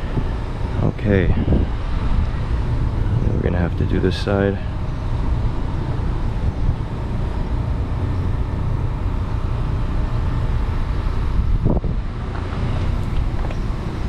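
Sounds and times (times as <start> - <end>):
wind on the microphone: 0.0 - 4.3, 11.0 - 14.0
road traffic: 0.0 - 14.0.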